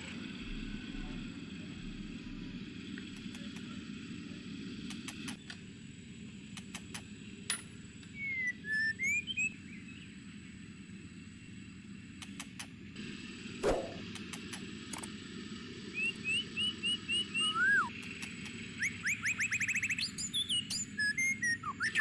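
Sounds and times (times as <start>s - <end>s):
light clicks and taps: 3.0s - 3.7s, 4.9s - 5.6s, 12.2s - 12.7s, 18.0s - 18.6s
short warbling whistle: 13.6s - 14.1s.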